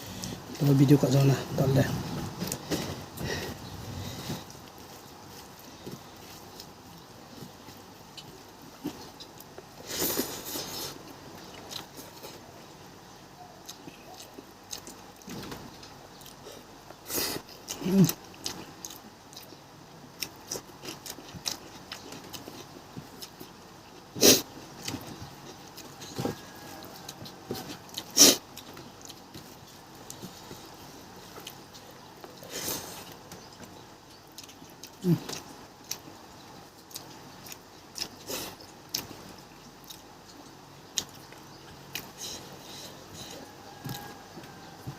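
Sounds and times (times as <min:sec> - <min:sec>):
chewing: 0:02.4 - 0:12.7, 0:13.4 - 0:44.9
person chewing and biting: 0:20.2 - 0:33.5, 0:36.8 - 0:39.2.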